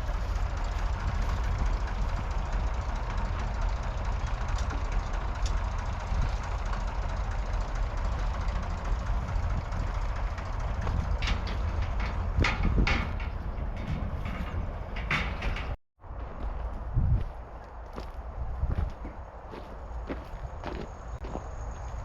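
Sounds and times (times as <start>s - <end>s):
tractor diesel engine rumbling: 0.0s - 22.0s
sharp metallic clanks: 9.8s - 15.8s.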